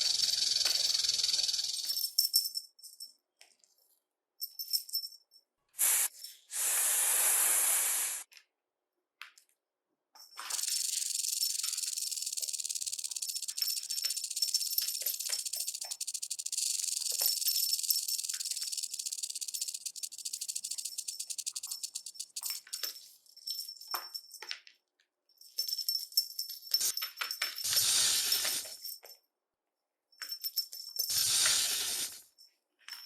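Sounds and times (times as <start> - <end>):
snake hissing rattle: 0.0 - 2.0, 5.8 - 8.3, 10.5 - 22.9, 27.6 - 28.8, 31.0 - 32.3.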